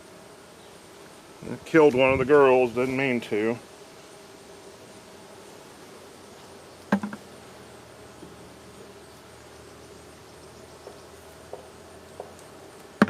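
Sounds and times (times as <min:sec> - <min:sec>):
honeybees buzzing: 0:00.0 - 0:13.0
sharp knocks: 0:06.9 - 0:07.2.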